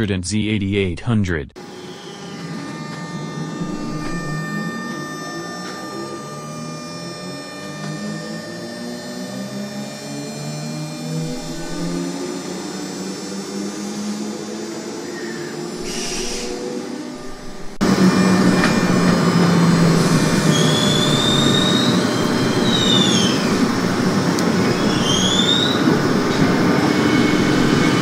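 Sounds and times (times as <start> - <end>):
low hum: 0.0 - 28.0
wheels squealing on rails: 1.6 - 12.0, 14.8 - 28.0
electric train running: 1.6 - 28.0.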